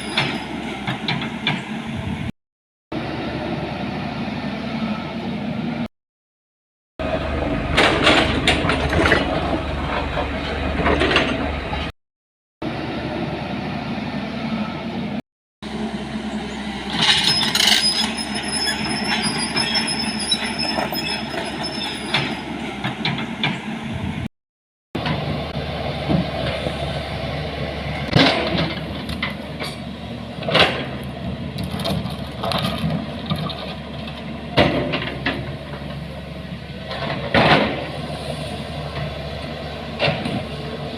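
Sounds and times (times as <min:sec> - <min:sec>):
vehicle rumble: 0:07.0 - 0:11.9, 0:12.6 - 0:24.3, 0:25.0 - 0:40.9.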